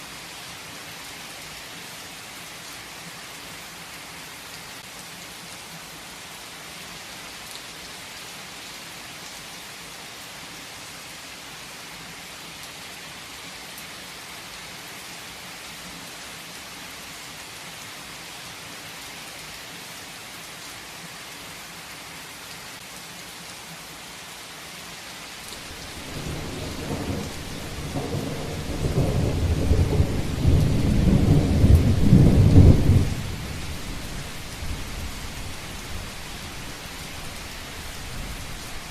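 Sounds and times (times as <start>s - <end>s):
heavy rain hissing: 25.1s - 38.9s
rolling thunder rumble: 25.6s - 36.6s.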